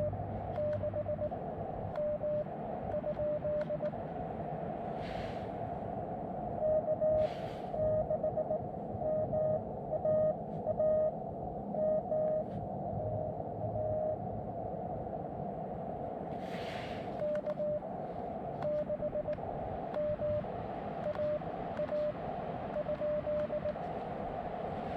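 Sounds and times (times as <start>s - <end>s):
morse code tones: 7.8s - 11.1s, 18.6s - 19.4s, 20.0s - 20.4s, 22.8s - 23.8s.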